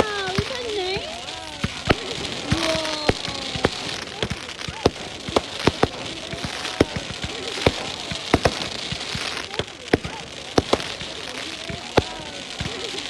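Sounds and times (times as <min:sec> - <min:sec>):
crackling hiss: 0:00.0 - 0:13.0
fireworks pops and bangs: 0:00.0 - 0:13.0.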